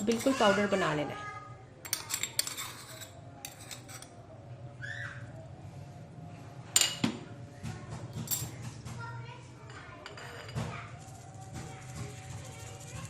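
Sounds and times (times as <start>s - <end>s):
spoon clinking against strainer: 0.0s - 0.7s, 1.8s - 4.2s.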